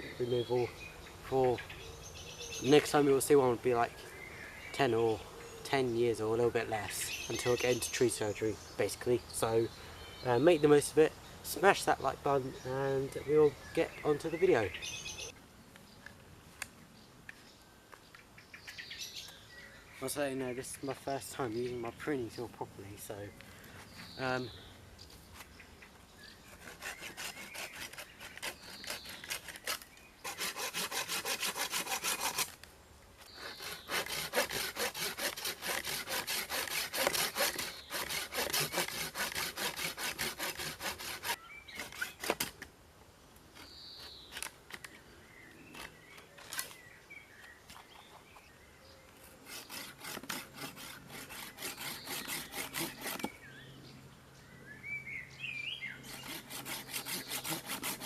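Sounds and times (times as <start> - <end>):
hand saw cutting wood: 26.4 - 32.6, 33.3 - 42.6, 49.4 - 53.4, 56.0 - 58.0.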